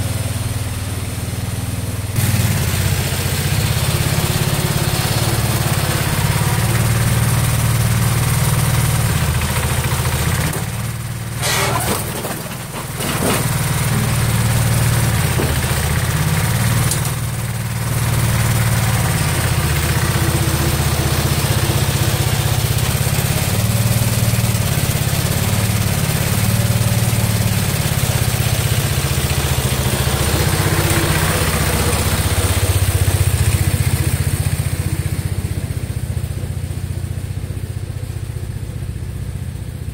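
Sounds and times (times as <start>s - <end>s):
garden tractor engine running: 0.0s - 39.9s.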